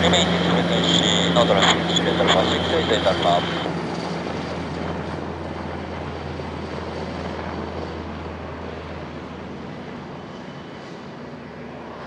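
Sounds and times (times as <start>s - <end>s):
helicopter turbine and rotor noise: 0.0s - 12.0s.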